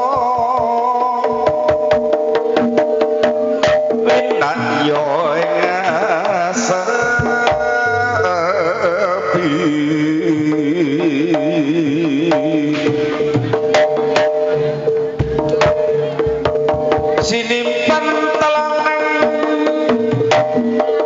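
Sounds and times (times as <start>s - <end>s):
hand drum strokes: 0.0s - 21.0s
melody with wavering vibrato: 2.9s - 17.9s.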